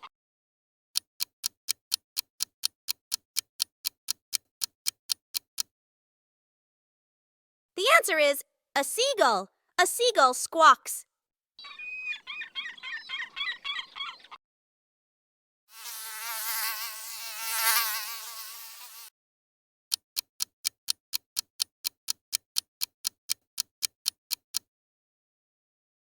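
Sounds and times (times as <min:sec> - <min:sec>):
clock-like ticks: 0:01.0 - 0:05.7, 0:19.9 - 0:24.7
seagull calls: 0:11.6 - 0:14.4.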